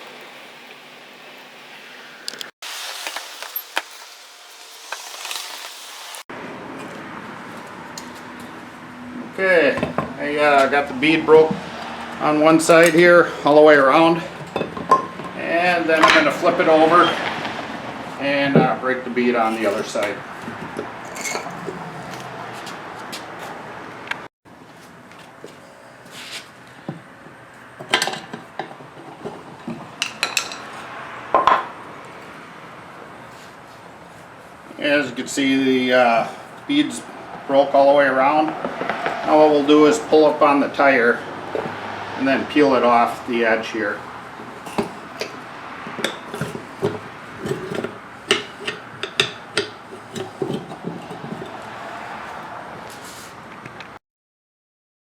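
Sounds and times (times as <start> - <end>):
metal clanks and knocks: 9.7 - 10.2, 14.3 - 15.4, 44.6 - 51.6.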